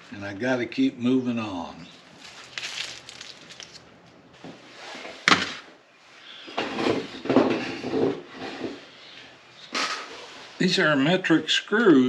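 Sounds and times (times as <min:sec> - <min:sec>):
clattering and handling noise: 0:01.9 - 0:05.7, 0:06.5 - 0:09.0, 0:09.6 - 0:10.4.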